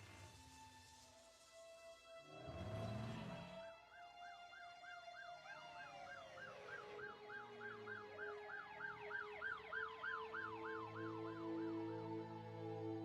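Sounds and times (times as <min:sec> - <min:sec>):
soft sustained music: 0:00.0 - 0:13.0
emergency siren yelping: 0:03.7 - 0:13.0.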